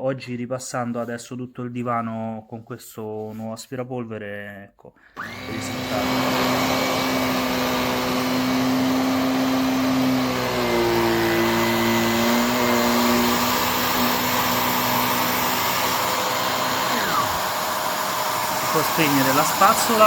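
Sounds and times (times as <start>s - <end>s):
handheld vacuum running: 5.2s - 20.0s.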